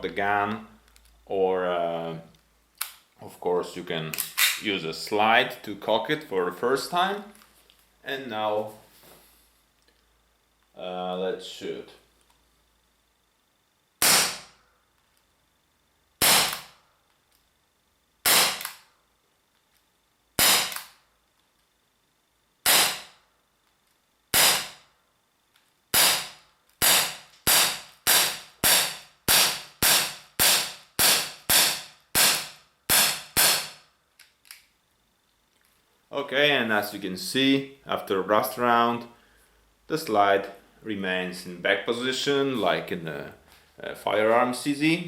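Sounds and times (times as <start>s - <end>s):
air pistol shots: 14.0s - 14.6s, 16.2s - 16.8s, 18.2s - 18.8s, 20.4s - 21.0s, 22.6s - 23.2s, 24.3s - 24.8s, 25.9s - 33.8s.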